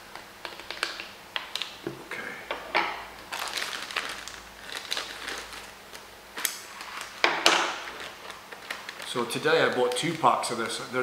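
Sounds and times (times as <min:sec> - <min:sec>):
plastic bag crinkling: 0:03.2 - 0:11.0.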